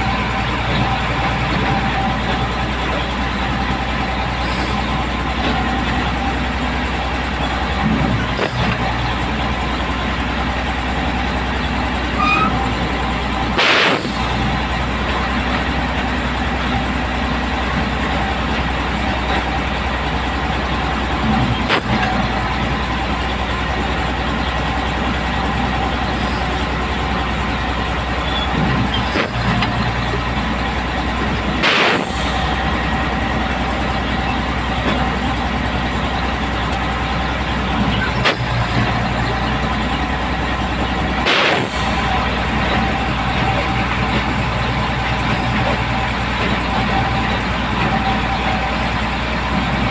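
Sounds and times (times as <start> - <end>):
low engine drone: 0.0 - 49.9
pile-driving hammer blows: 7.3 - 9.9, 12.1 - 24.1, 28.2 - 49.9.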